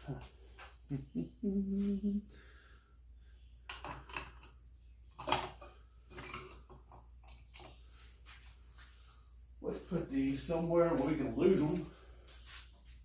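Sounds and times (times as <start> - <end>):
metal bolts and tool clinking: 5.2 - 7.8.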